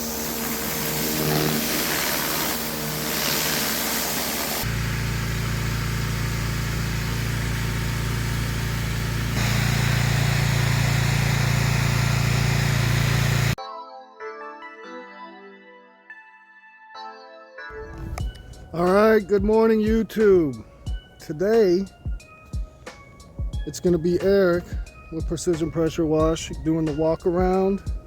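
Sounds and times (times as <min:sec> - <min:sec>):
hiss: 0:00.0 - 0:04.7, 0:09.3 - 0:13.6
engine running steadily: 0:03.8 - 0:13.6.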